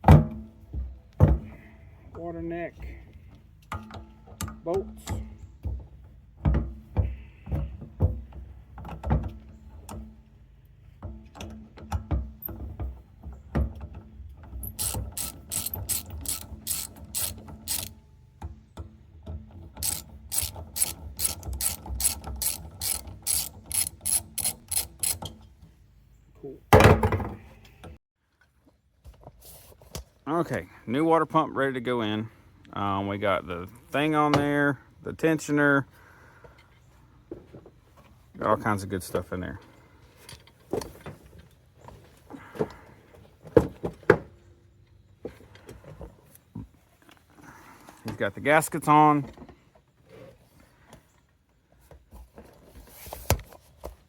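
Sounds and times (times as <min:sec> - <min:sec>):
metal tools knocking and clanking: 0:11.0 - 0:25.4
socket ratchet clicking: 0:14.8 - 0:17.9, 0:19.8 - 0:25.3.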